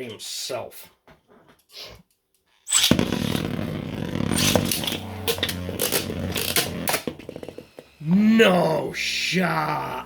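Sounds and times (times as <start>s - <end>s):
spinning tops launched: 2.7s - 7.1s.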